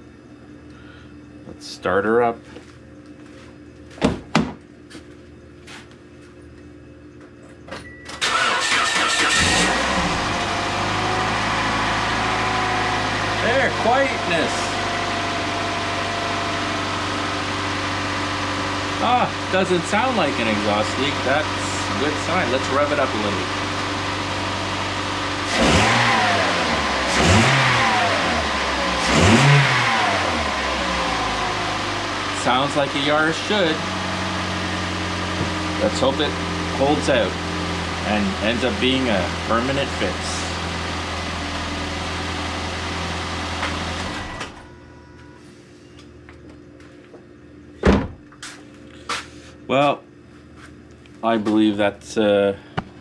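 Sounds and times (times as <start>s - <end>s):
car engine cranking and idling: 8.2s - 44.7s.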